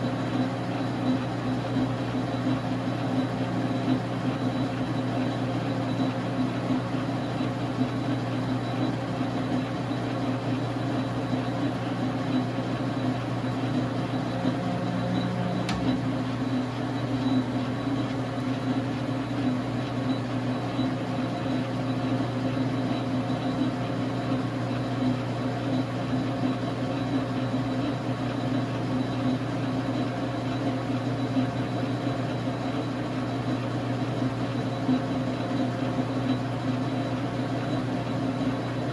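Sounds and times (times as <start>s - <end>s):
metal lathe humming: 11.8s - 18.7s.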